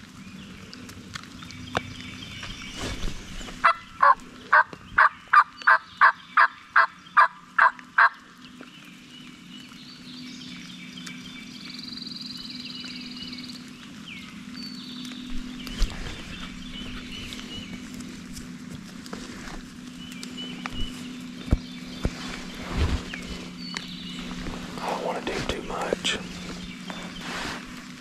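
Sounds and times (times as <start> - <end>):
faint songbirds calling: 0.0 - 28.0
turkey call yelping: 3.6 - 8.2.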